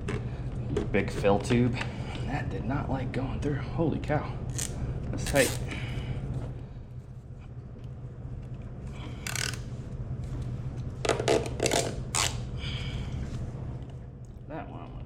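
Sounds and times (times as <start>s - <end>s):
steady low hum: 0.0s - 15.0s
zip tie being pulled tight: 11.4s - 12.4s.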